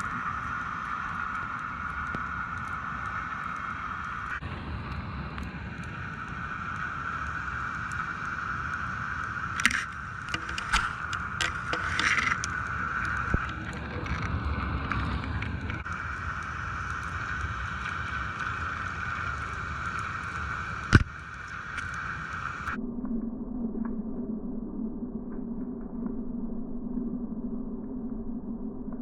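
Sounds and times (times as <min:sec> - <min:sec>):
boat engine humming: 0:06.4 - 0:22.7
sharp clicks and knocks: 0:09.6 - 0:12.6.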